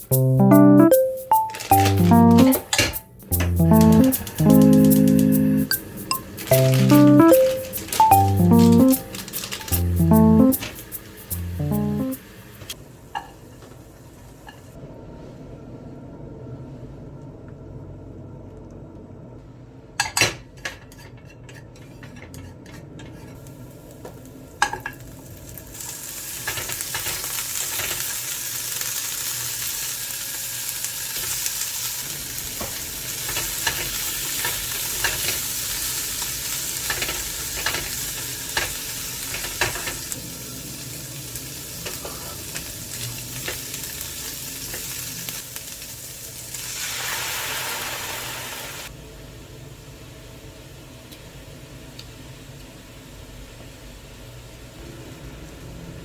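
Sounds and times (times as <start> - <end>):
food sizzling in a pan: 23.4 - 48.9.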